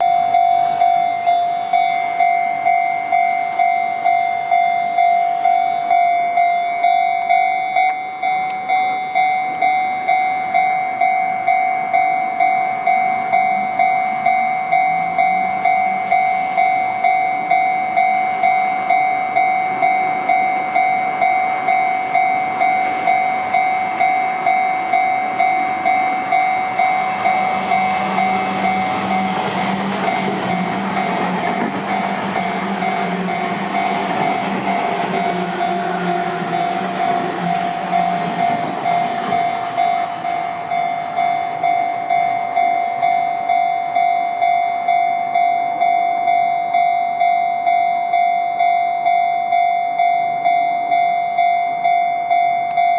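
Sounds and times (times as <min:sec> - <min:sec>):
level-crossing warning bell: 0:00.0 - 0:52.9
train rumble: 0:08.2 - 0:45.9.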